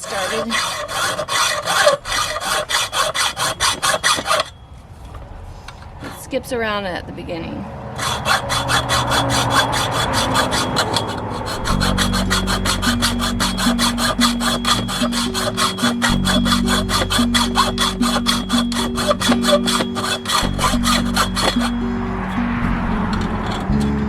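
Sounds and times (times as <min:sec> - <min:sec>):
hacksaw cutting metal: 0:00.0 - 0:04.6, 0:08.0 - 0:24.0
background music: 0:08.0 - 0:24.0.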